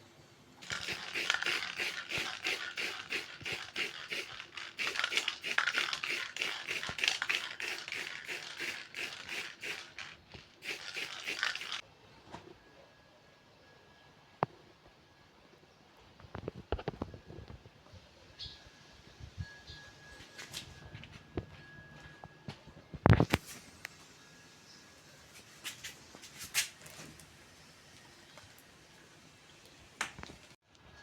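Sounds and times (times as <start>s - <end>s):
spray can rattling: 0.6s - 11.8s.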